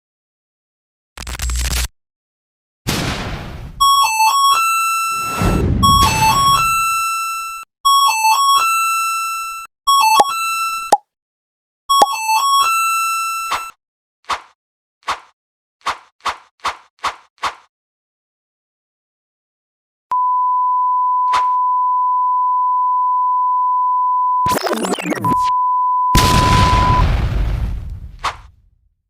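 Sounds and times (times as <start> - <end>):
electronic beeping tune: 5.8 - 7.0, 9.9 - 11.0, 11.9 - 12.6
electronic sine-wave beep: 20.1 - 27.0.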